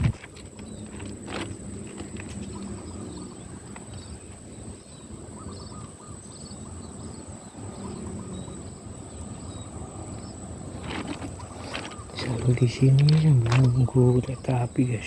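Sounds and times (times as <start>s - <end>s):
bird chirps: 0.0s - 15.0s.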